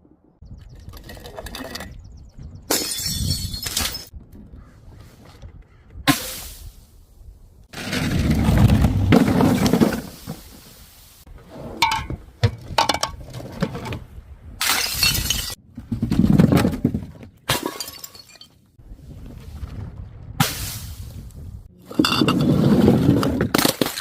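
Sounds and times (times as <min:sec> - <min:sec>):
glass bottles breaking: 0:02.7 - 0:04.1, 0:14.6 - 0:15.6, 0:17.5 - 0:18.6
glass shards clinking: 0:02.7 - 0:04.1, 0:14.6 - 0:15.6.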